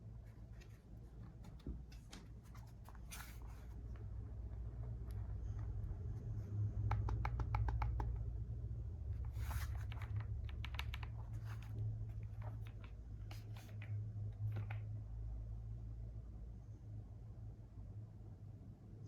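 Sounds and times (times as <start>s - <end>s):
steady low hum: 0.0s - 19.0s
mechanical keyboard key clicks: 6.8s - 8.3s, 9.6s - 11.7s.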